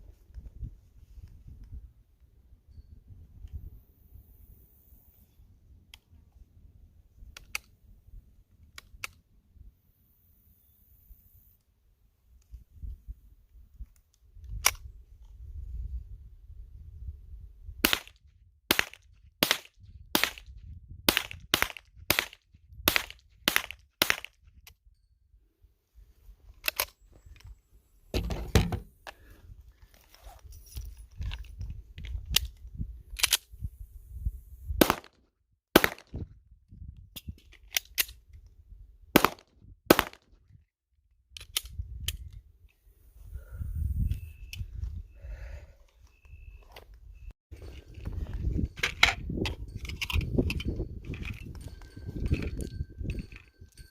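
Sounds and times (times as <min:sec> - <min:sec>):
pistol shots: 0:34.8 - 0:35.1, 0:35.8 - 0:36.1, 0:39.2 - 0:40.2.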